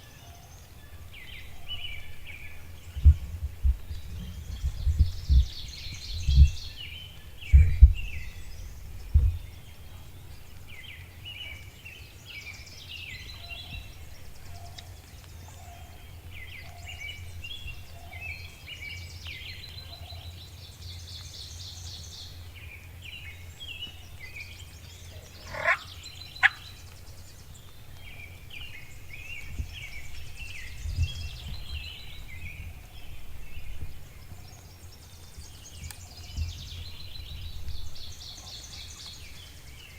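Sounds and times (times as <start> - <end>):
songbirds singing: 0.0 - 39.9
low thumps: 2.9 - 6.6, 7.5 - 9.5
sharply rising bird calls: 25.2 - 26.9.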